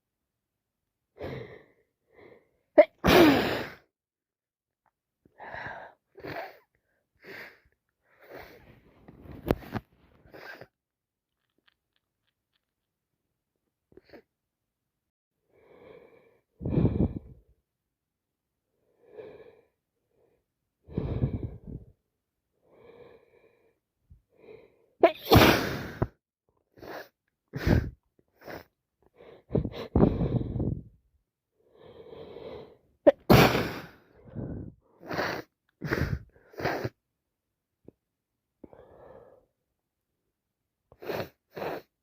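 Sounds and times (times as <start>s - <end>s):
woman sneezing: 2.8s - 3.8s, 25.0s - 26.0s, 33.1s - 33.9s
woman breathing: 5.3s - 10.7s, 15.5s - 17.4s, 18.9s - 22.0s, 26.8s - 31.0s, 33.8s - 37.0s.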